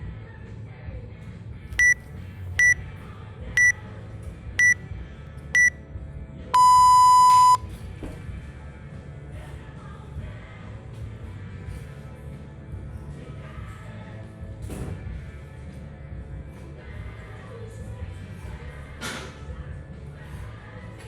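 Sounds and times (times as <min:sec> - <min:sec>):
long low beep: 0:06.6 - 0:07.6
short high beeps: 0:06.6 - 0:07.6.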